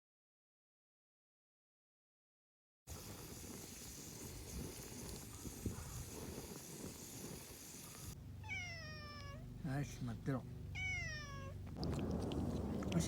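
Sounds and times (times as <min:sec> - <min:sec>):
wind noise: 0:04.2 - 0:08.2, 0:11.7 - 0:13.0
cat meowing: 0:08.4 - 0:09.5, 0:10.7 - 0:11.6.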